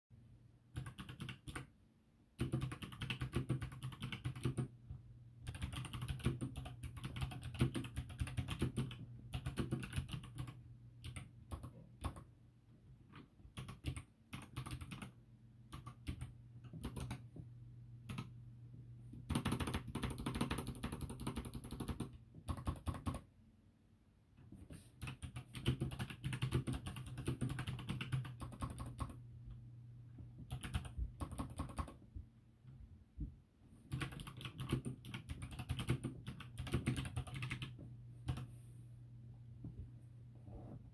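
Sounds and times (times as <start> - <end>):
fast typing on clicky keyboard: 0.7 - 12.4, 13.1 - 17.4, 18.0 - 18.4, 19.2 - 23.3, 25.0 - 29.2, 30.4 - 32.0, 33.8 - 38.5.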